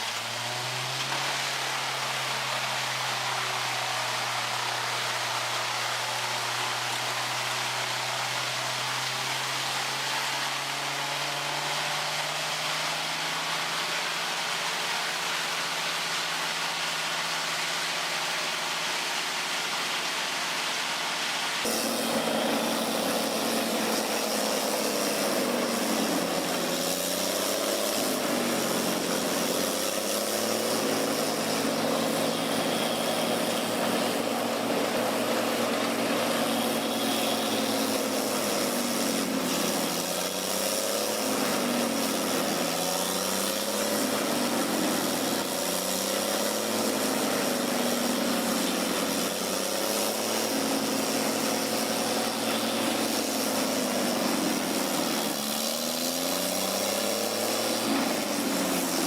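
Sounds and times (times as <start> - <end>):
wood chipper engine running: 0.0 - 59.0
wood chipping and grinding: 21.6 - 59.0.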